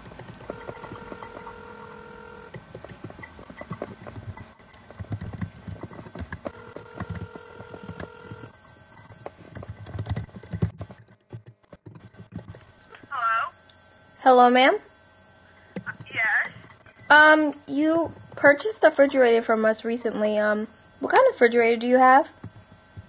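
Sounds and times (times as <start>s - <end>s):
handling clicks and thumps: 0.0s - 12.8s
telephone ringback tone: 0.5s - 2.6s, 6.5s - 8.5s.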